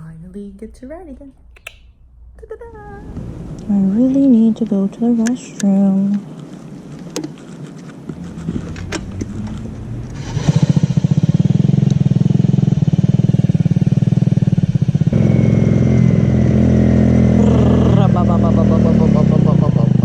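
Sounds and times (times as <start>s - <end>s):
clicks: 1.5s - 2.0s
motorcycle engine running: 8.1s - 20.0s.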